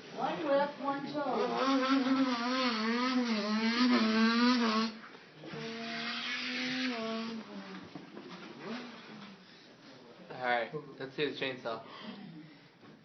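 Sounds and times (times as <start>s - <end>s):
boy imitating an engine: 1.4s - 5.0s, 5.6s - 7.8s.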